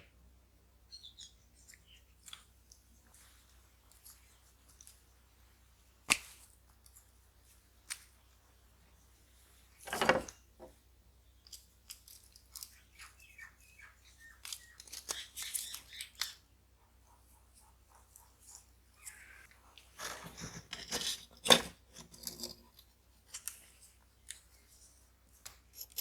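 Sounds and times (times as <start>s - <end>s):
small clicks and scratches: 1.1s - 5.1s, 11.4s - 16.4s, 17.1s - 26.0s.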